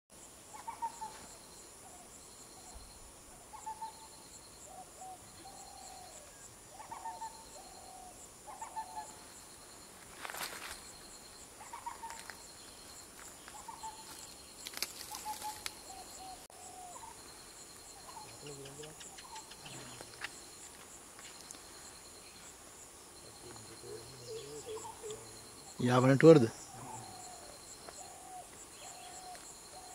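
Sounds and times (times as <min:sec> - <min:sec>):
insects shrilling: 0:00.6 - 0:29.9
crackling rustles: 0:09.8 - 0:16.2.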